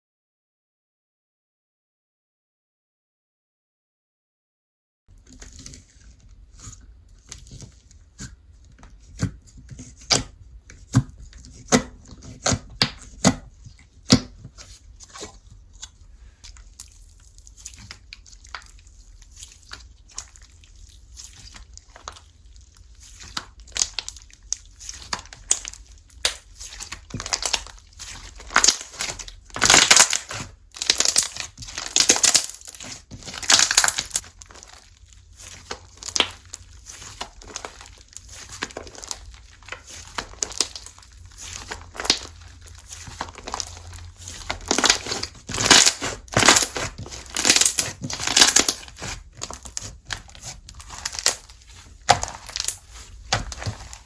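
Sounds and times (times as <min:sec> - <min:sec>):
slime squeezed crackling: 0:13.6 - 0:54.0.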